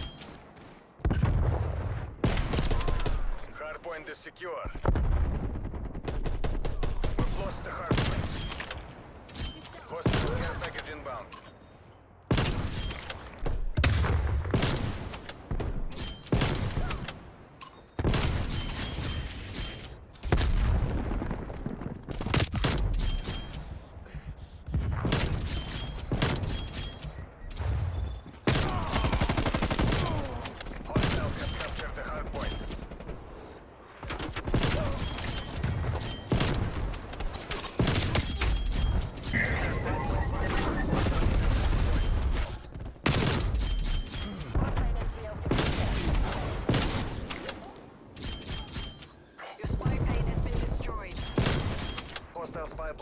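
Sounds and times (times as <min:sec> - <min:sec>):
video game gunfire: 0:24.7 - 0:33.2
video game automatic gunfire: 0:28.5 - 0:31.4.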